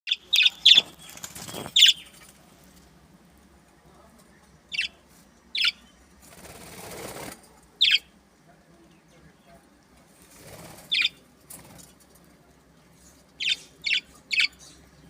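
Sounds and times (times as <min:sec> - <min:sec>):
birds chirping: 0:00.1 - 0:15.0
rustling: 0:00.6 - 0:03.0.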